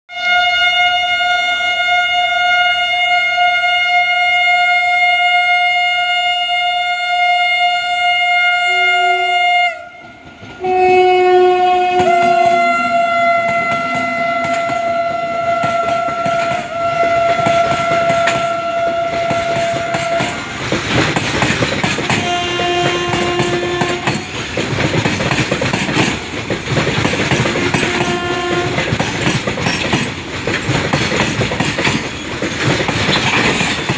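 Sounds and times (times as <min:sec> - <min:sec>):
short horn toots: 0:00.1 - 0:20.4, 0:22.1 - 0:24.2
locomotive air horn blast: 0:00.1 - 0:20.7, 0:22.1 - 0:24.4, 0:27.6 - 0:29.0
train wheels rattling over rail joints: 0:11.6 - 0:33.9.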